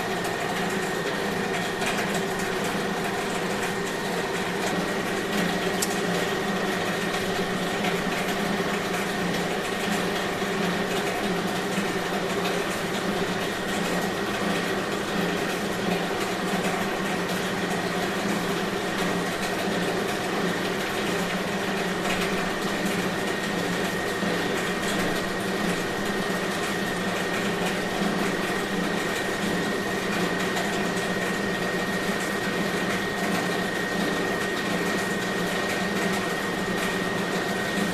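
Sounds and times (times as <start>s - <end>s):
machine whining while cutting metal: 0.0s - 9.4s, 21.9s - 37.9s.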